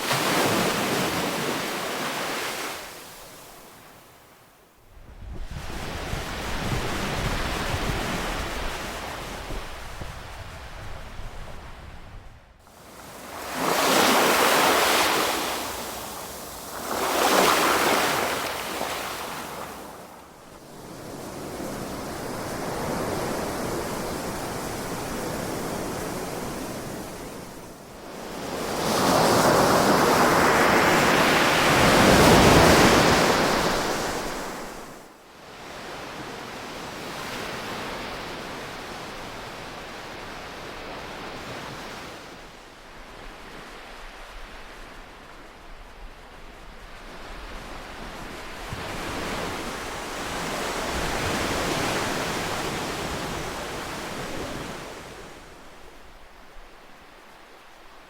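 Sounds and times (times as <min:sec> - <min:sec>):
ocean waves breaking: 0:00.0 - 0:03.8, 0:12.7 - 0:20.1.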